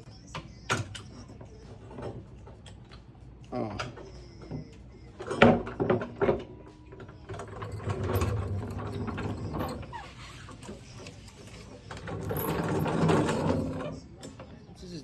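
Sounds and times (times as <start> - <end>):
metal rattling: 7.4 - 9.9.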